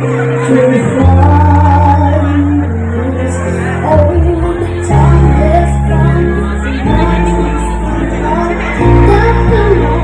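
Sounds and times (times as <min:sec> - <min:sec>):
backing music track: 0:00.0 - 0:10.0
child singing: 0:03.8 - 0:10.0.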